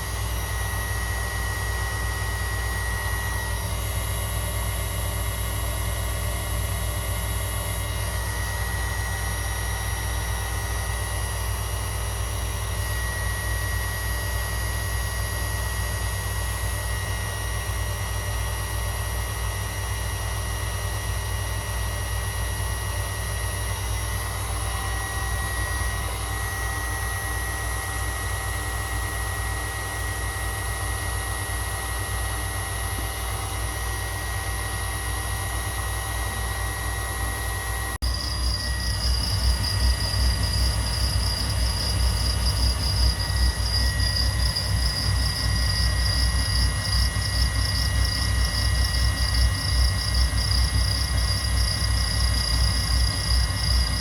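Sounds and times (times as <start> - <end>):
machine low drone: 0.0 - 15.0, 31.8 - 54.0
high-pitched whine: 0.0 - 16.7, 23.0 - 54.0.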